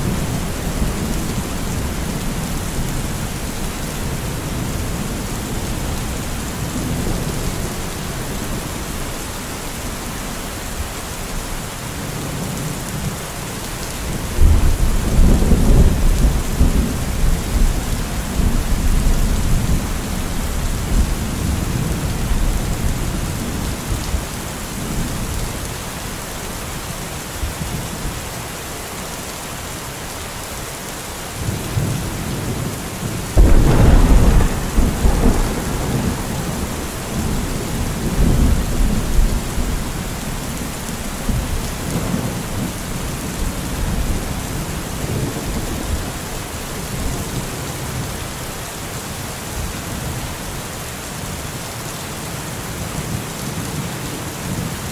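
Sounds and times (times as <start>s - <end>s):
steady rain: 0.0s - 54.9s
rolling thunder: 31.8s - 46.1s
loud thunderclap: 33.4s - 40.2s.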